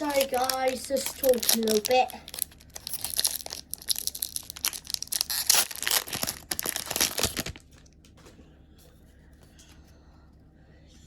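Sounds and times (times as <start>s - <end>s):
plastic wrapper tearing and crinkling: 0.0s - 7.8s.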